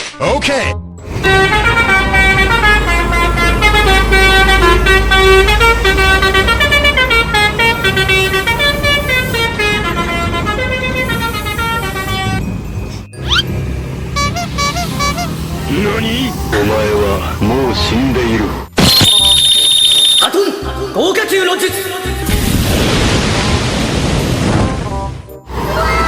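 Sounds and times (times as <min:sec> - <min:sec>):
multi-tone air horn melody: 0:01.0 - 0:12.5, 0:14.1 - 0:16.6.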